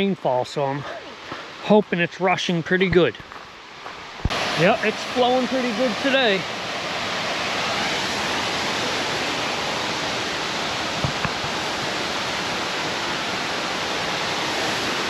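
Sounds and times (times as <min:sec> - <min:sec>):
rushing stream water: 0:00.3 - 0:15.0
low thump: 0:11.0 - 0:11.6.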